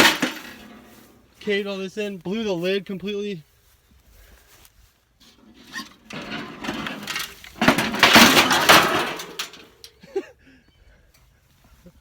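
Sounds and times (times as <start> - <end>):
sheet-metal grill rattling: 0.0 - 1.0, 5.5 - 9.9.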